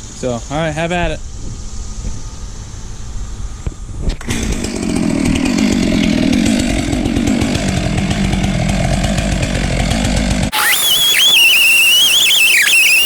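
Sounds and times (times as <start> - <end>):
chainsaw revving and cutting: 4.2 - 13.0.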